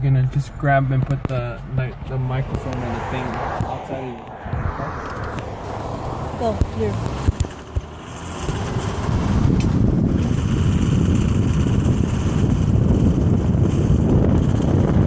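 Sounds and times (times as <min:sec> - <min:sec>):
engine and road rumble: 0:00.0 - 0:15.0
wind on microphone: 0:01.8 - 0:15.0.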